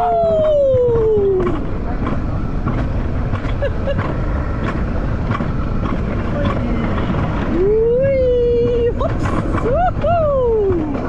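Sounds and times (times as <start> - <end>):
sled wheels rumbling on track: 0.0 - 11.0.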